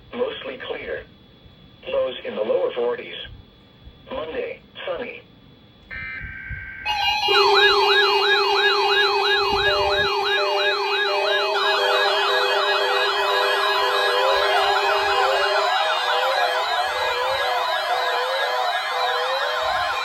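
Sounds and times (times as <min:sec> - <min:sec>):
steady low tone: 0:05.8 - 0:17.4
electronic siren rising and falling: 0:05.9 - 0:20.0
fast sweeping siren: 0:05.9 - 0:20.0.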